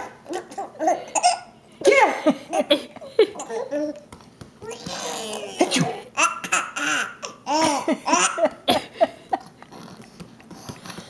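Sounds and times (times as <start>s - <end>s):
hearty breathy laughter: 7.6s - 9.6s.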